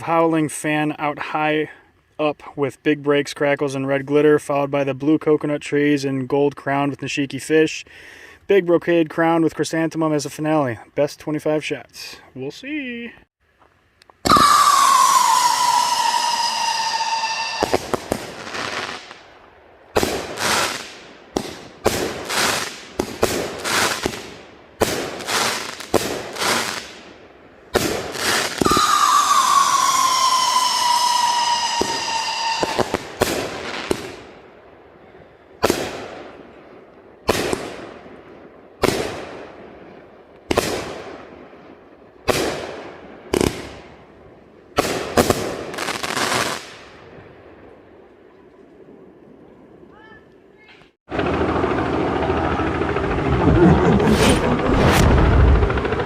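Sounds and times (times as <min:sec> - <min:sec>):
howling firework whistle: 0:14.2 - 0:19.1, 0:28.3 - 0:33.1
firework shots bursting: 0:14.2 - 0:19.2, 0:19.9 - 0:27.1, 0:27.7 - 0:34.3, 0:35.6 - 0:36.4, 0:37.3 - 0:37.9, 0:38.8 - 0:39.4, 0:40.5 - 0:41.3, 0:42.3 - 0:43.8, 0:44.8 - 0:46.9.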